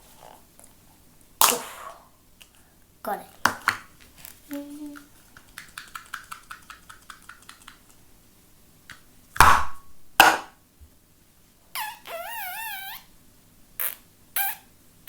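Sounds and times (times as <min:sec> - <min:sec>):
sharp knocks: 0:09.4 - 0:10.5.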